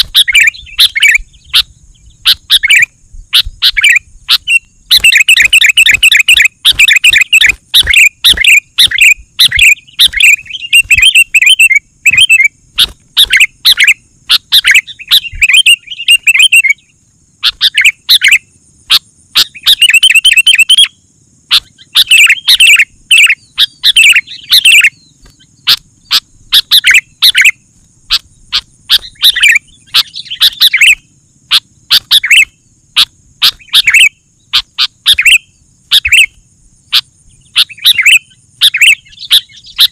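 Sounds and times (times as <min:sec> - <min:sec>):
bird bubbly chirping: 0:00.0 - 0:16.8, 0:21.6 - 0:31.0.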